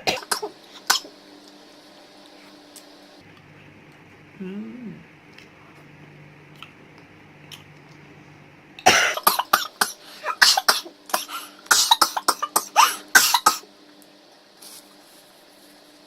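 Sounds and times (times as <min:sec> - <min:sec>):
woman coughing: 0:08.8 - 0:13.6.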